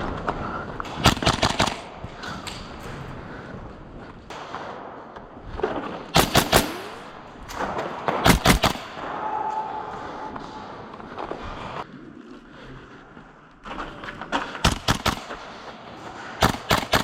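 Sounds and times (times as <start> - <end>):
airsoft gun firing bursts: 0.9 - 1.9, 6.1 - 7.2, 8.1 - 9.0, 14.6 - 15.5, 16.4 - 17.0.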